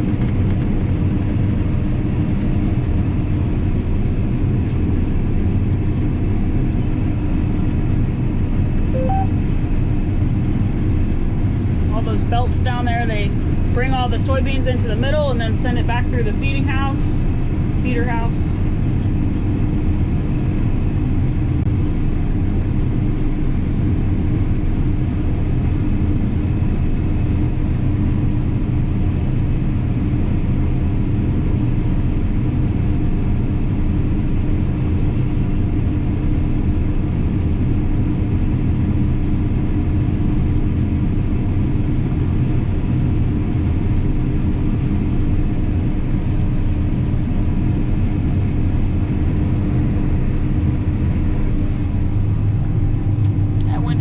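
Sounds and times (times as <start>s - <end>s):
combine harvester running: 0.0s - 54.0s.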